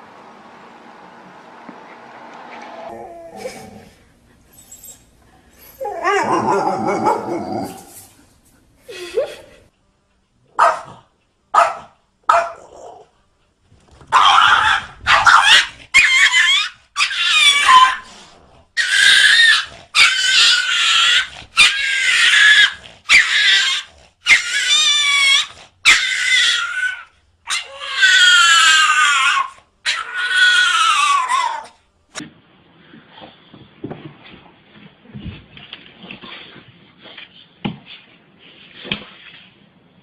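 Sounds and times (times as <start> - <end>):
dog whining: 2.6 - 8.1, 14.1 - 31.8
dog yelping: 5.6 - 7.9, 11.6 - 13.0, 14.1 - 18.1, 18.8 - 31.8.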